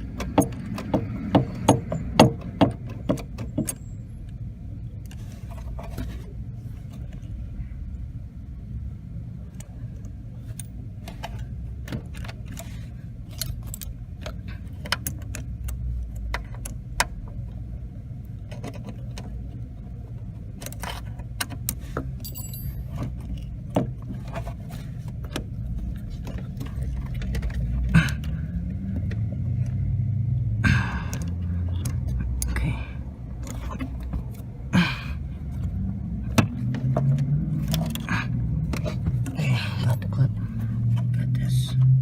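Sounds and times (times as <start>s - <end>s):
steady low rumble: 25.0s - 42.0s.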